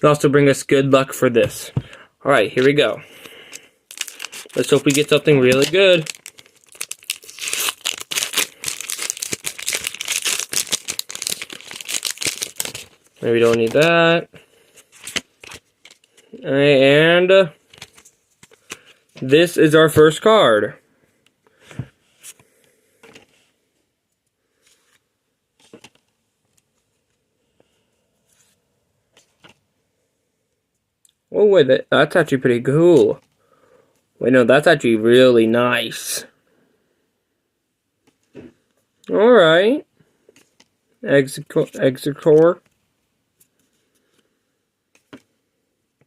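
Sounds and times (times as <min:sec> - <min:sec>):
trading cards rustling and scraping: 0:02.5 - 0:16.4, 0:17.6 - 0:19.2
foil wrapper tearing and crinkling: 0:03.9 - 0:13.9.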